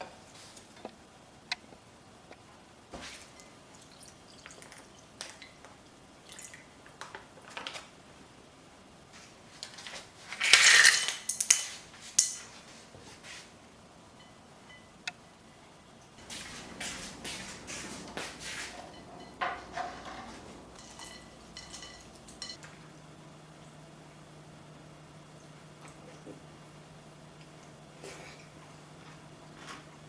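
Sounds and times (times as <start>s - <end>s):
dishes clicking and knocking: 10.4s - 12.4s, 18.1s - 22.8s.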